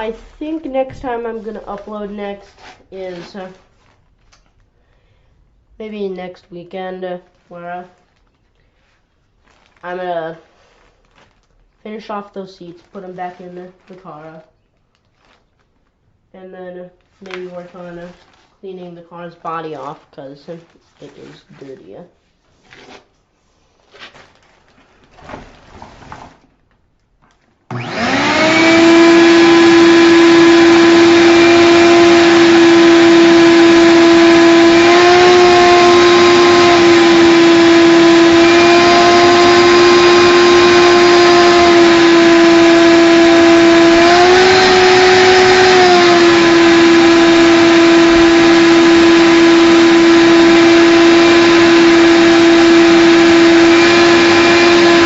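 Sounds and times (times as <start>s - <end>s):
shop vacuum motor whining: 27.7s - 55.0s.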